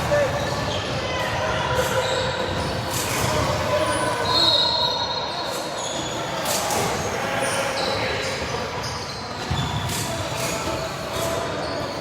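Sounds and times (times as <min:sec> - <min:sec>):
sneakers squeaking on court: 0:07.4 - 0:12.0.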